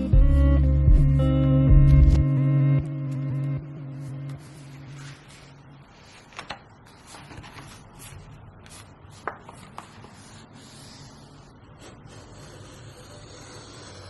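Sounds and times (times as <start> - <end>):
hands scraping paper: 4.4 - 14.0.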